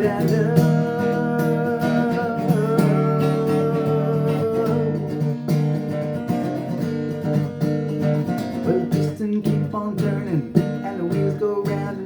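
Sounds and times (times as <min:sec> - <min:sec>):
acoustic guitar strumming: 0:00.0 - 0:12.0.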